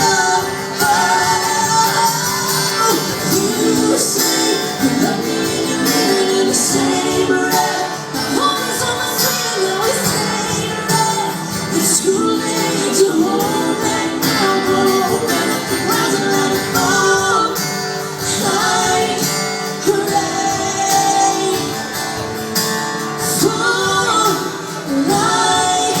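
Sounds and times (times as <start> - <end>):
guitar: 0.0 - 26.0
live band music: 0.0 - 26.0
woman singing: 0.0 - 26.0.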